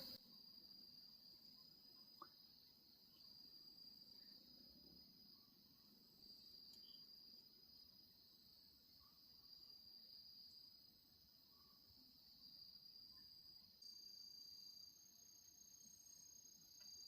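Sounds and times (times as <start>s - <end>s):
insect chirring: 0.0s - 0.2s, 6.2s - 7.4s, 12.6s - 17.0s.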